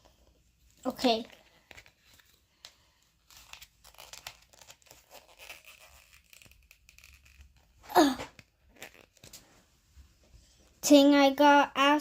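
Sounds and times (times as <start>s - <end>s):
packaging rustling and tearing: 3.2s - 7.8s.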